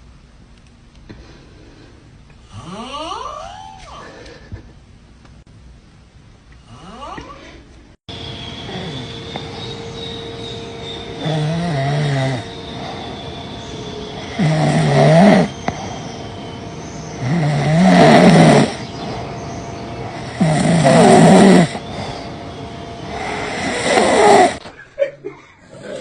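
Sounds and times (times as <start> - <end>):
steady background hum: 0.0 - 26.0
loud rasping snoring: 2.5 - 3.4, 6.7 - 7.4, 8.7 - 9.7, 11.2 - 13.3, 14.2 - 16.2, 17.2 - 22.4, 23.0 - 24.6.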